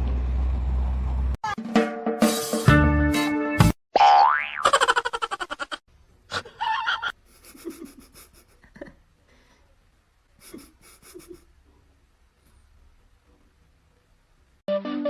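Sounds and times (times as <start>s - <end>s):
quick breathing: 10.4s - 11.4s.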